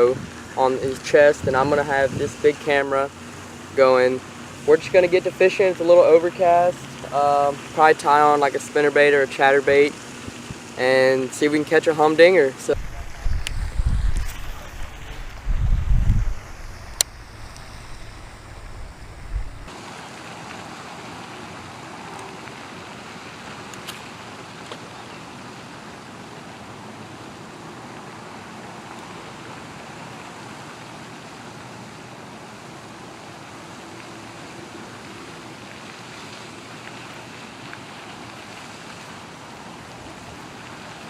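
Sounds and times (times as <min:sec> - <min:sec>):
steady rushing hiss: 0:00.0 - 0:24.6
low rumble: 0:12.8 - 0:19.7.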